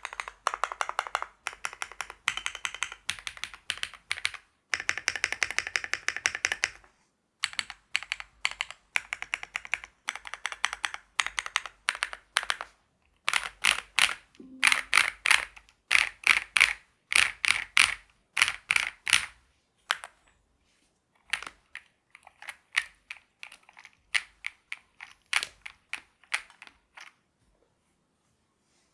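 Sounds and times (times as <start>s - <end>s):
mechanical keyboard typing: 0.0s - 20.2s, 21.3s - 27.2s.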